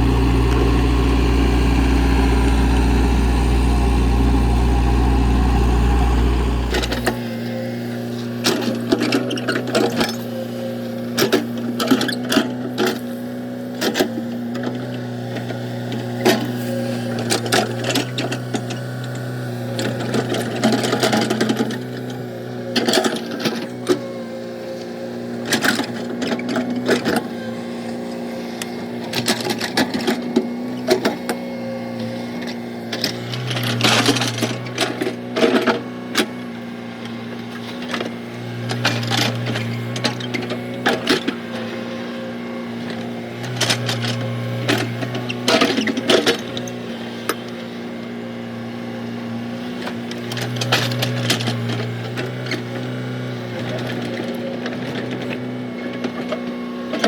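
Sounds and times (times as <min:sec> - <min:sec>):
excavator diesel engine running: 0:00.0 - 0:07.4.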